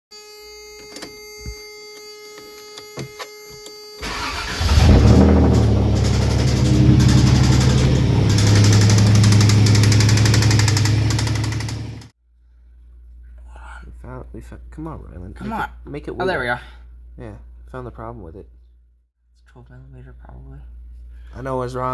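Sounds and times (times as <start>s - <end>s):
car engine cranking and knocking: 4.0s - 12.1s
clicks: 5.6s - 12.1s.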